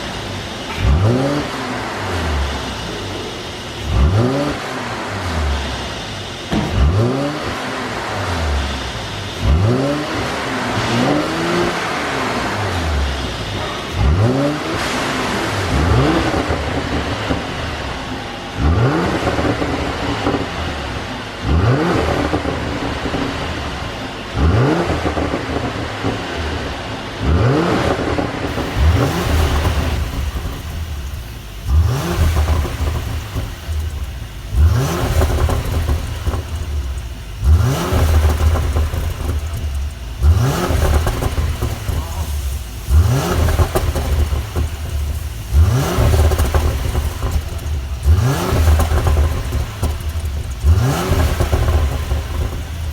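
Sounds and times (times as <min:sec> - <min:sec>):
car engine revving: 0:00.0 - 0:52.9
exhaust popping and crackling: 0:00.0 - 0:52.9.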